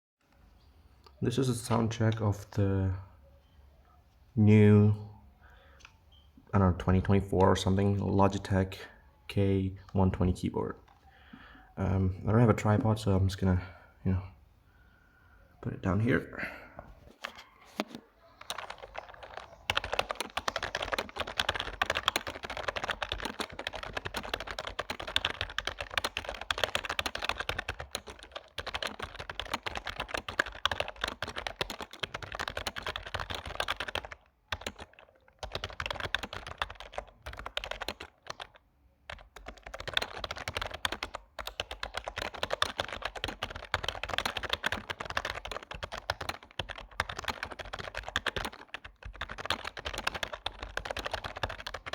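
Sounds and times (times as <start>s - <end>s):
typing on keyboard: 17.2s - 51.9s.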